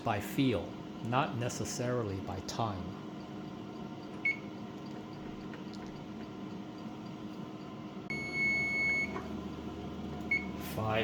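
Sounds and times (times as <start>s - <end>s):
toaster oven humming: 0.0s - 11.0s
long high timer beep: 8.1s - 9.1s.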